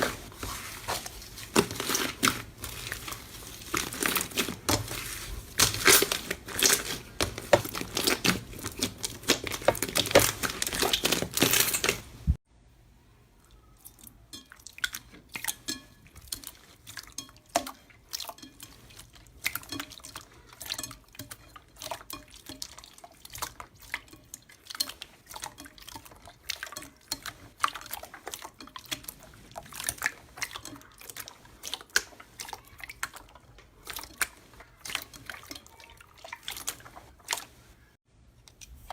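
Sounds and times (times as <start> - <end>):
slime crackling: 0.0 - 12.4.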